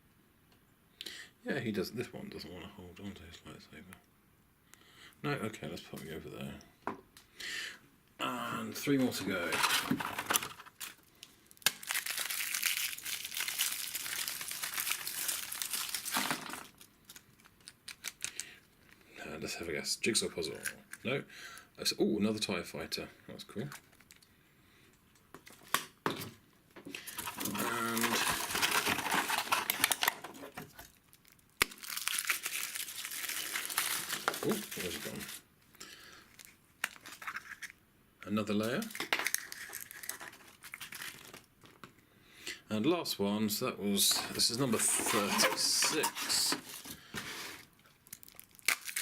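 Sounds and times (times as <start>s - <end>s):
wrapper crinkling: 8.9s - 19.0s, 23.7s - 24.3s, 26.9s - 35.4s, 36.3s - 37.8s, 38.6s - 41.8s, 44.0s - 49.0s.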